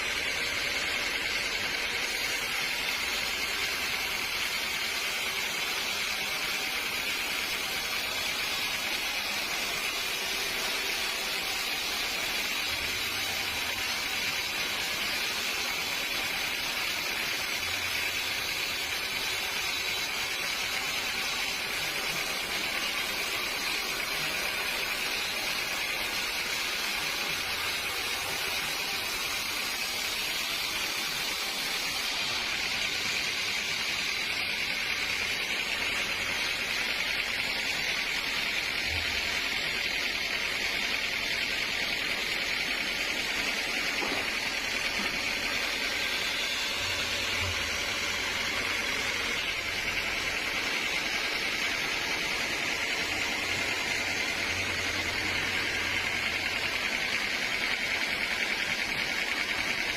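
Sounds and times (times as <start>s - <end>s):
sawmill machinery hissing: 0.0s - 59.9s.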